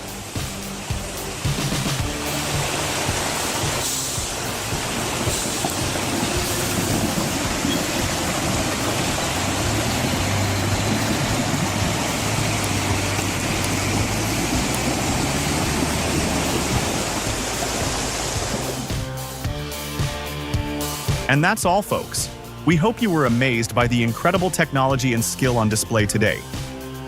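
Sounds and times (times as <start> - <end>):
machine engine running: 0.0 - 19.2
loud rushing noise: 0.0 - 19.5.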